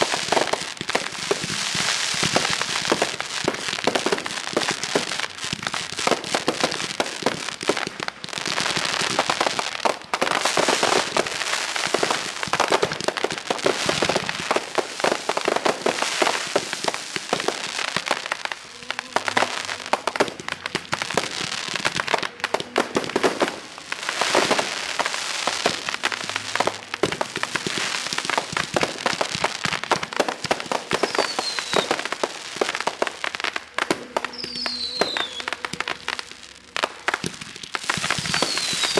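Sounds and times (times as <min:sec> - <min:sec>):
fireworks crackling and popping: 0:00.0 - 0:38.9
falling firework whistles: 0:30.9 - 0:32.2, 0:34.2 - 0:36.3, 0:37.2 - 0:38.9.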